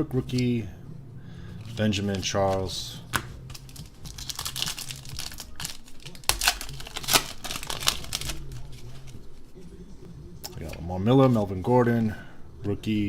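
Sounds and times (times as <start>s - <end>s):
wrapper crinkling and rustling: 3.4s - 9.5s.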